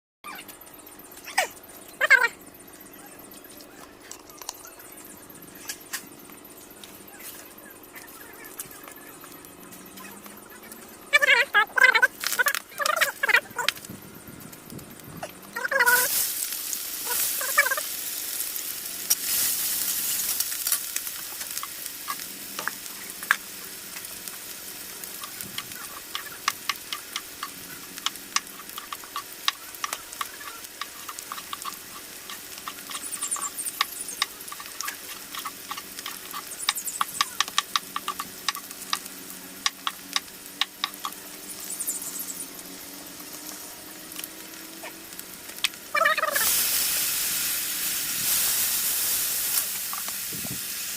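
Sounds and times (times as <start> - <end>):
food sizzling in a frying pan: 15.6 - 50.9.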